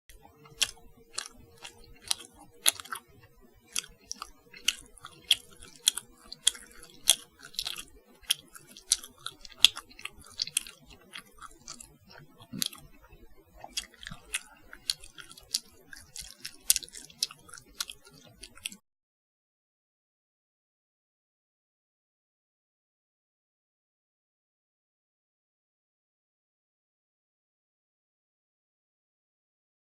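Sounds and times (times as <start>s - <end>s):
crunchy chewing: 0.1s - 18.8s.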